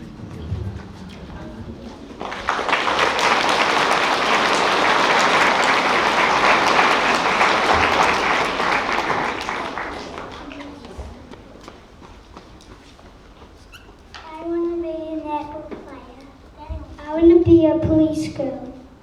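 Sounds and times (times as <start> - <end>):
audience applauding: 0.0 - 12.3.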